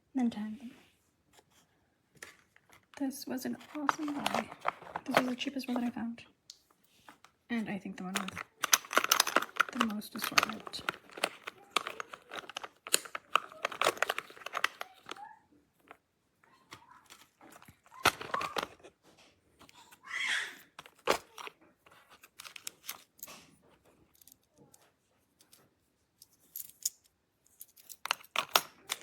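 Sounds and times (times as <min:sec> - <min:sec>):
packaging rustling and crinkling: 0:02.2 - 0:06.0, 0:07.0 - 0:16.0, 0:16.7 - 0:19.0, 0:20.7 - 0:23.2
packaging tearing: 0:08.2 - 0:15.2, 0:17.1 - 0:18.8.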